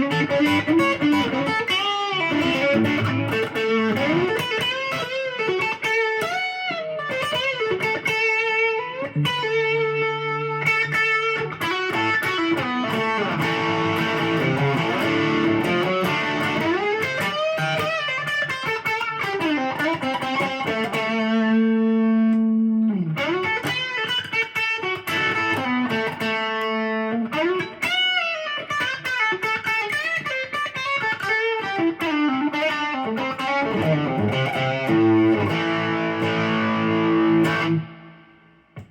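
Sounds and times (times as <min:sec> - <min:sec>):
overdriven electric guitar lead: 0:00.0 - 0:38.9.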